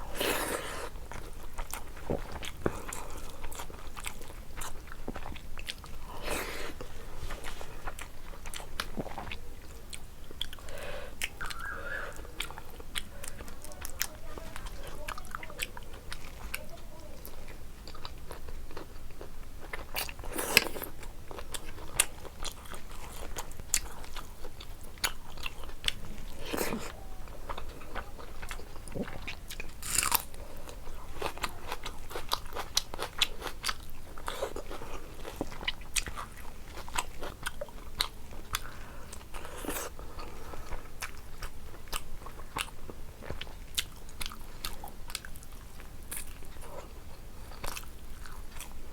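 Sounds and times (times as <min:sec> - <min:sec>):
person chewing food: 0:00.0 - 0:48.9
wet mouth clicks: 0:10.4 - 0:14.0
crunchy bites: 0:29.0 - 0:30.3.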